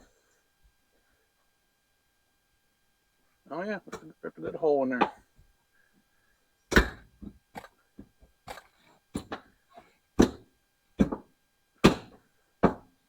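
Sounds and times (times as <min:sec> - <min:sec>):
knocks on sheet metal: 0:11.8 - 0:12.9.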